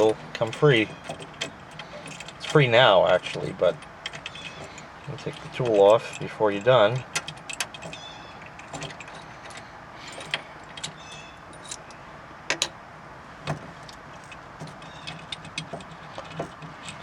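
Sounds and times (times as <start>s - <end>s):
metal hand tools clinking: 0.0s - 12.7s.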